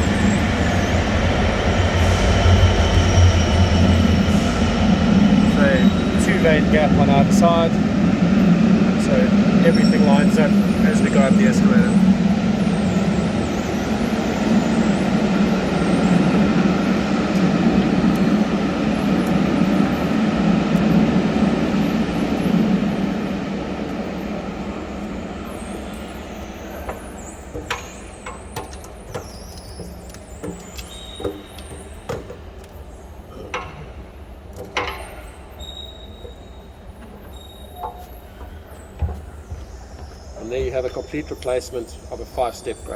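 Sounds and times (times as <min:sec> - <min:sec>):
mechanical hum with low drone: 0:00.0 - 0:42.9
sharp clicks and knocks: 0:26.8 - 0:32.8, 0:33.4 - 0:35.2.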